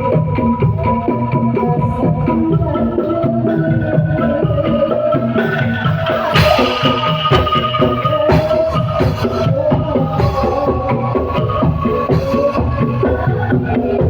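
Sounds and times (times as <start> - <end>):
steady rhythmic beat: 0.0 - 14.0
bamboo angklung ensemble playing: 4.8 - 11.7
crash-like hit: 6.4 - 9.0.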